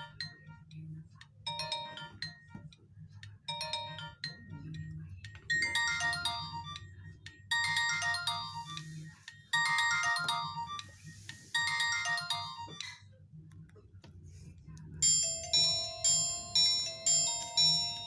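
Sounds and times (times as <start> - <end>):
bell-like ringtone: 1.5 - 2.7, 3.5 - 13.0, 15.0 - 18.0
electronic phone ringtone: 1.5 - 2.7, 5.5 - 13.0, 15.0 - 18.0.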